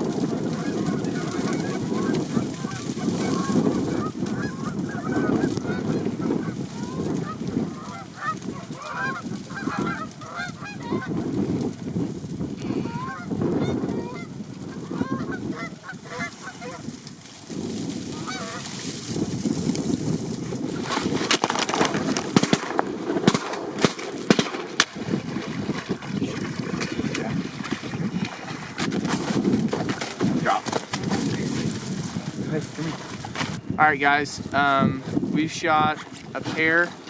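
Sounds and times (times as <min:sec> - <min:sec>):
geese honking: 0:00.0 - 0:11.3, 0:12.6 - 0:17.0, 0:18.1 - 0:18.9
gusty wind on microphone: 0:00.0 - 0:37.0.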